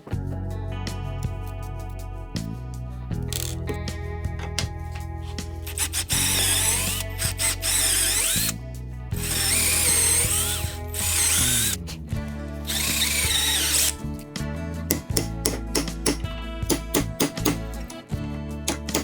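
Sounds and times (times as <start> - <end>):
background music: 0.0 - 19.0
power drill whining: 3.3 - 3.6, 5.6 - 8.6, 9.2 - 11.9, 12.6 - 14.0.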